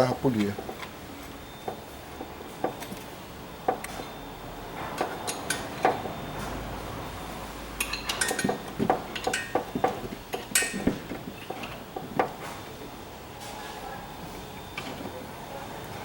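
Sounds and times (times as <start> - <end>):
metal tools clinking: 7.8 - 10.8.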